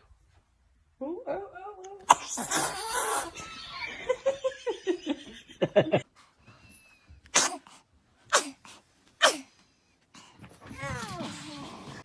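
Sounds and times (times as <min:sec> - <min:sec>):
baby sneezing: 0:07.3 - 0:09.6.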